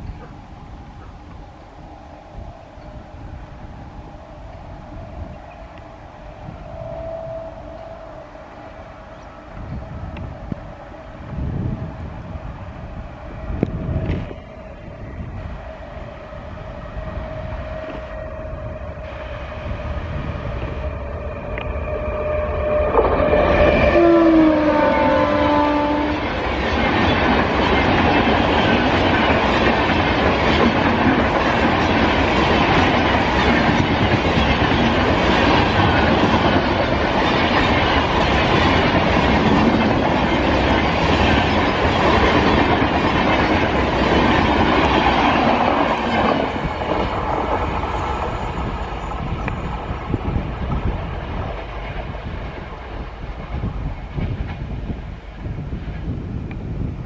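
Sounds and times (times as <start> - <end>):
train rushing past: 0.0 - 57.0
train horn: 1.0 - 42.9.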